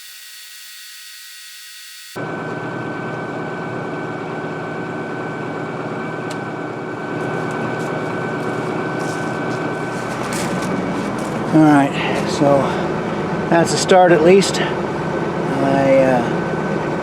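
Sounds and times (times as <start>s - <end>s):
welding arc hiss and crackle: 0.0s - 2.2s, 7.0s - 12.6s
steady hum: 5.3s - 14.1s.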